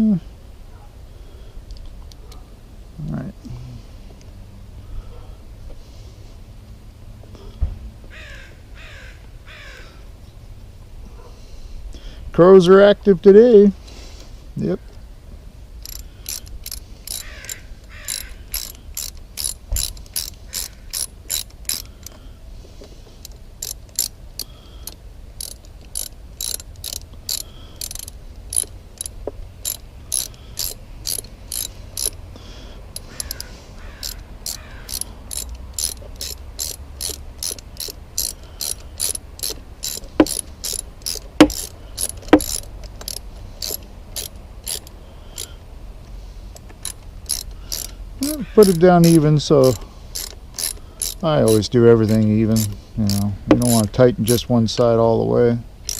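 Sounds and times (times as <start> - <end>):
hand ratchet clicking: 15.8 - 32.2, 32.9 - 45.6, 46.5 - 54.5.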